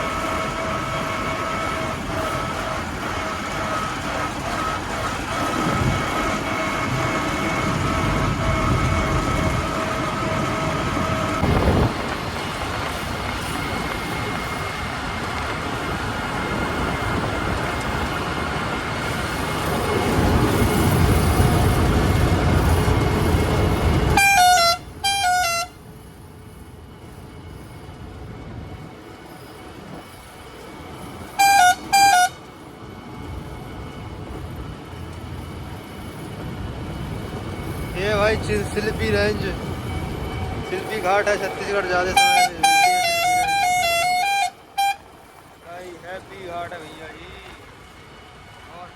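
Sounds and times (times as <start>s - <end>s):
engine and road noise: 0.0s - 48.9s
vehicle horn honking: 24.2s - 25.8s, 31.4s - 32.4s, 42.0s - 45.1s.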